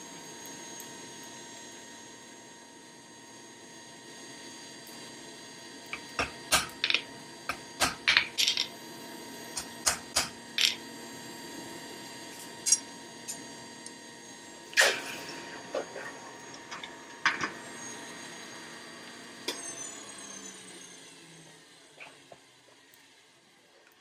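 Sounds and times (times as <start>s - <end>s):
metal tools clinking: 10.6s - 10.8s.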